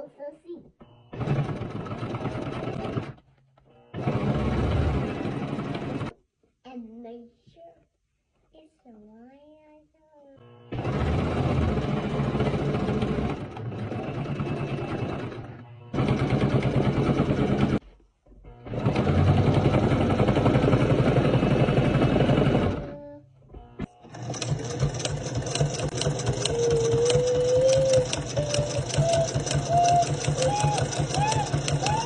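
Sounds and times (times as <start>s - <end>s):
sewing machine stitching: 1.1s - 3.3s, 3.9s - 6.1s, 10.7s - 17.8s, 18.6s - 23.0s, 23.8s - 32.0s.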